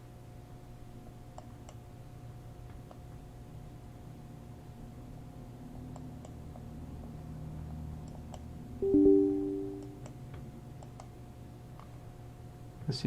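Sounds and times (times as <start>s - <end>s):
faint mouse clicks: 1.3s - 1.8s, 5.9s - 6.6s, 8.0s - 8.4s, 10.8s - 11.1s
two-note falling alert chime: 8.8s - 10.0s.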